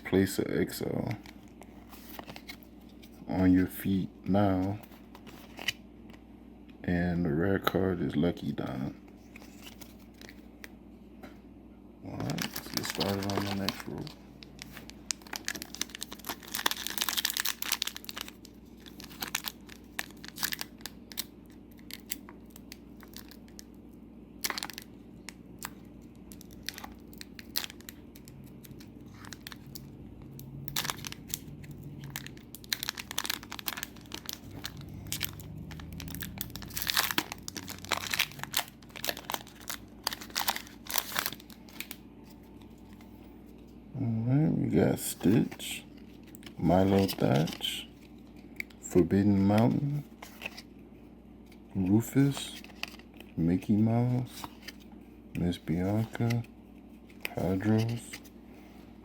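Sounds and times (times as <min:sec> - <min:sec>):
foil wrappers crinkling and tearing: 0:12.2 - 0:23.8, 0:24.4 - 0:43.0, 0:45.2 - 0:48.2, 0:51.8 - 0:54.8.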